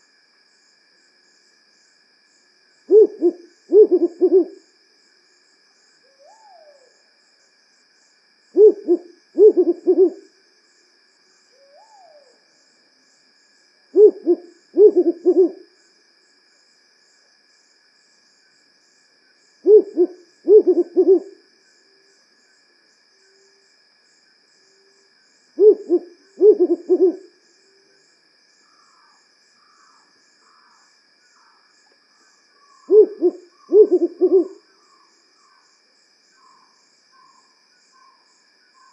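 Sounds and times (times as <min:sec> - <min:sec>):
owl hooting: 0:02.9 - 0:04.6, 0:08.5 - 0:10.3, 0:13.9 - 0:15.6, 0:19.6 - 0:21.4, 0:25.6 - 0:27.3, 0:32.7 - 0:34.6.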